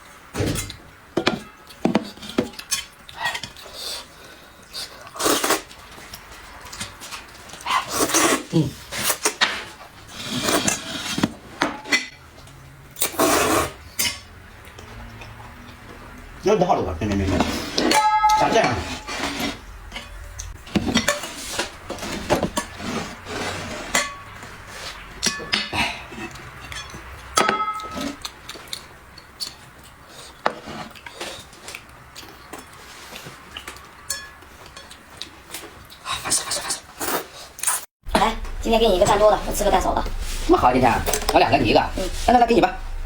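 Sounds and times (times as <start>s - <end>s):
chopsticks and spoons tapping dishes: 25.2s - 29.6s, 32.6s - 35.7s.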